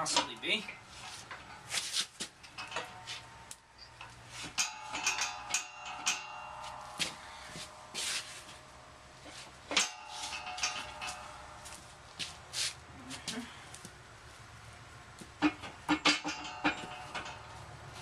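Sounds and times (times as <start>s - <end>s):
metal clanks and knocks: 2.3s - 11.8s, 15.3s - 18.0s.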